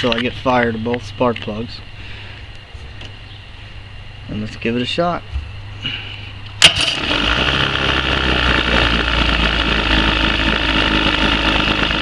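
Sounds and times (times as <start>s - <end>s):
outboard motor running: 6.6s - 12.0s.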